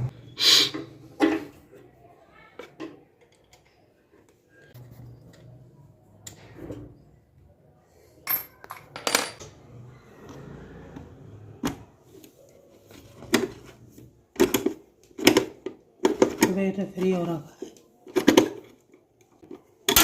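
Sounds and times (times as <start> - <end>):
metal tools clinking: 8.2 - 9.4.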